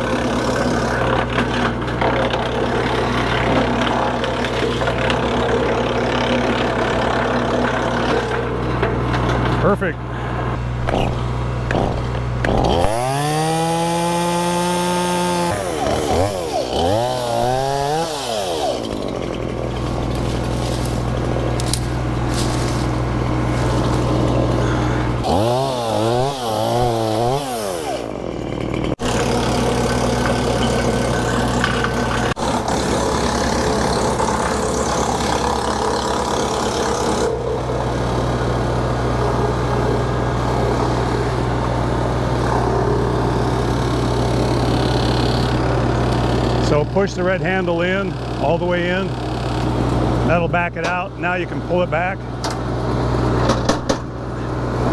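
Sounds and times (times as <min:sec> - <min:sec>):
wood chipper chewing branch: 0:00.0 - 0:54.9
tractor engine hum: 0:08.2 - 0:54.9
sharp knocks: 0:10.8 - 0:13.0.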